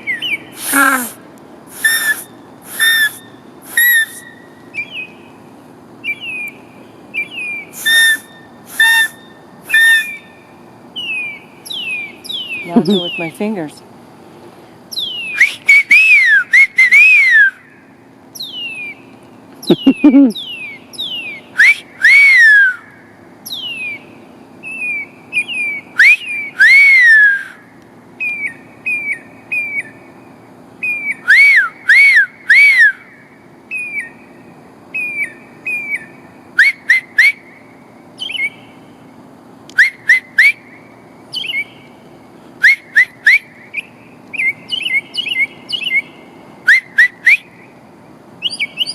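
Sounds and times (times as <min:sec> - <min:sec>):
mockingbird whistles and chirps: 0:00.0 - 0:01.1, 0:01.7 - 0:05.4, 0:06.0 - 0:10.4, 0:11.0 - 0:13.4, 0:14.9 - 0:17.7, 0:18.3 - 0:27.6, 0:28.2 - 0:30.1, 0:30.8 - 0:37.6, 0:38.2 - 0:38.7, 0:39.8 - 0:41.9, 0:42.6 - 0:47.6, 0:48.4 - 0:48.9
person whistling through fingers: 0:01.8 - 0:04.2, 0:07.8 - 0:10.2, 0:19.7 - 0:20.3.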